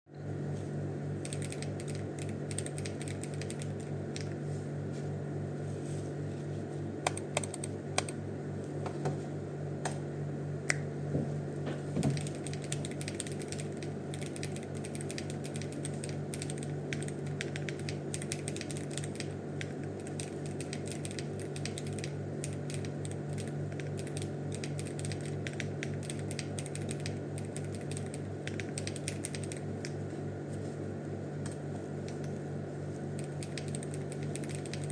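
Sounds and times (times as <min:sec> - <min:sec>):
fast typing on mechanical keyboard: 0:01.2 - 0:04.3, 0:07.1 - 0:08.2, 0:12.0 - 0:30.0, 0:33.2 - 0:34.9.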